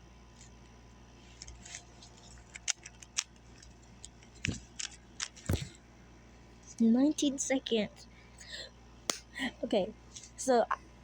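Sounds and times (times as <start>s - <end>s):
puzzle cube plastic clicks: 2.4s - 5.7s.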